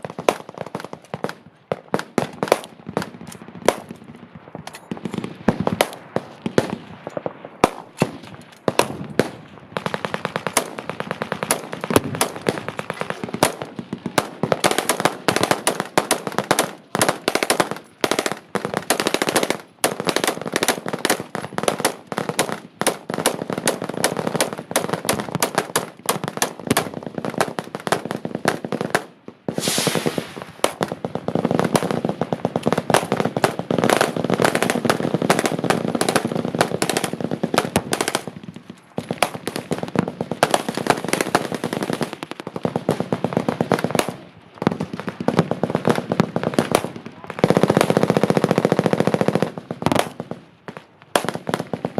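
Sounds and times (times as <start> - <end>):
machine-gun fire: 7.6 - 38.3.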